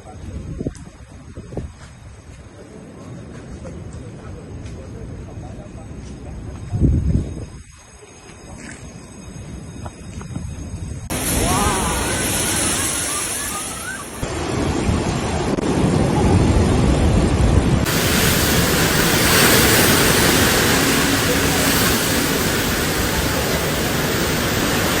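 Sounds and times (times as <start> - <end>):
wind buffeting microphone: 0.0 - 25.0
wind and rain rushing: 9.4 - 25.0.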